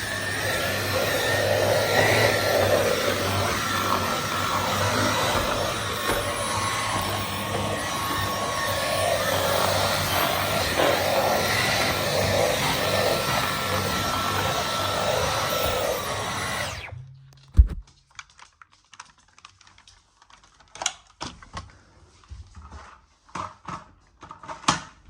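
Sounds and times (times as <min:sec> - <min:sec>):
stick vacuum running: 0:00.0 - 0:17.7.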